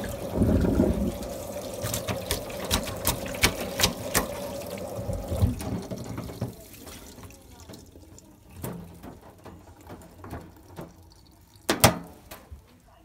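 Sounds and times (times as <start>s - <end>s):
tap water running into sink: 0.0s - 12.7s.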